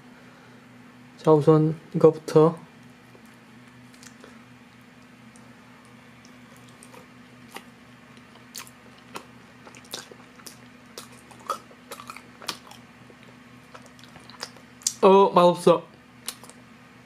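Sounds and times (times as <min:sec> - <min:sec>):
steady low hum: 0:00.0 - 0:17.0
wet chewing mouth clicks: 0:03.9 - 0:04.3, 0:05.3 - 0:15.0, 0:16.2 - 0:16.6.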